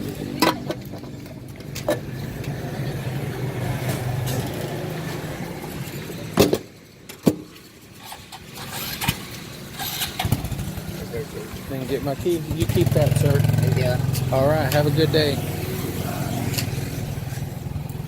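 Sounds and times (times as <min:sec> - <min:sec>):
vehicle engine running: 0:10.1 - 0:18.0.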